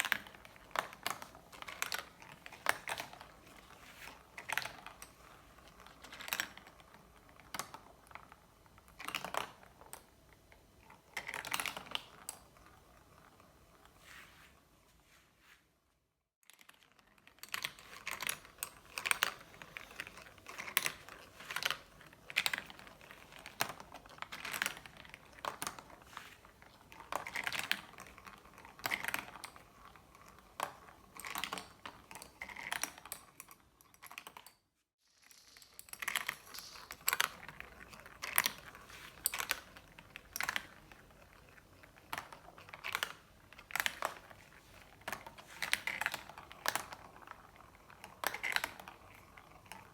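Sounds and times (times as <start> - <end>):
marbles rolling and clacking: 35.1 - 49.9.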